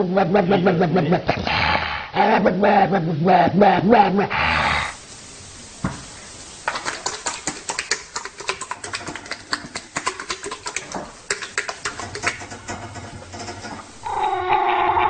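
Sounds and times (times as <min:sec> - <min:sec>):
rapid irregular clicking and tapping: 0:06.7 - 0:13.9.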